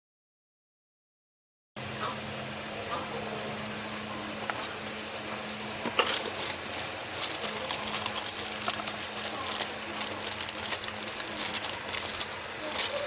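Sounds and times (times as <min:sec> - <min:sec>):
low hum: 0:01.8 - 0:13.0
clicking and crinkling handling: 0:05.3 - 0:13.0.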